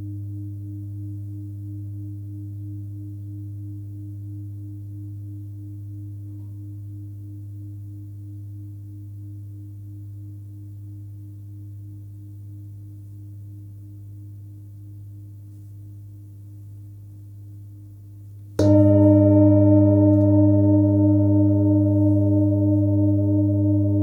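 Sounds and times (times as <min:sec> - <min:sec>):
singing bowl ringing: 0:18.6 - 0:24.0.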